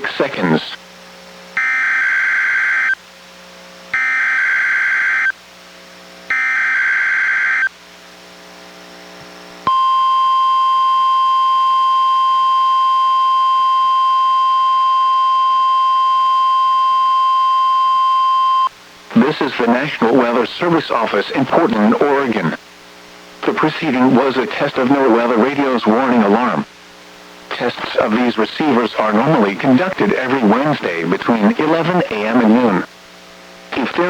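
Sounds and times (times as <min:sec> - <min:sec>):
steady warning alarm tone: 0:01.6 - 0:03.0, 0:03.9 - 0:05.4, 0:06.3 - 0:07.7, 0:09.7 - 0:18.7.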